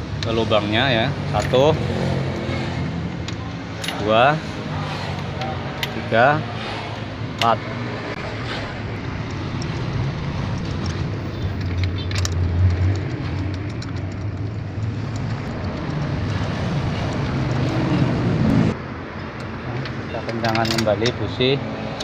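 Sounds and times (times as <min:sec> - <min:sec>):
motor vehicle rumbling: 0:00.0 - 0:22.0.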